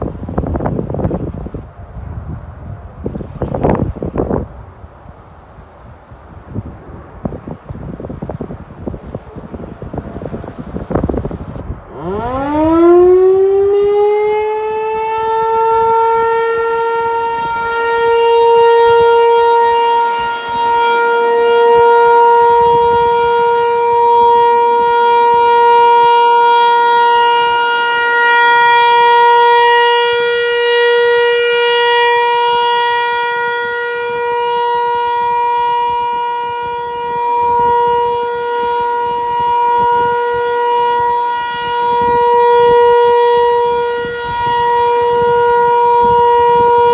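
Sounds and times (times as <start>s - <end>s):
warning siren winding up: 9.9s - 46.9s.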